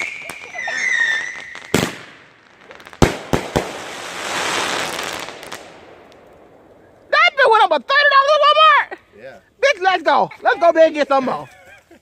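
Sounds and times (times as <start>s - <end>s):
fireworks bangs and cracks: 0.0s - 8.6s
fireworks crackling hiss: 0.0s - 11.8s.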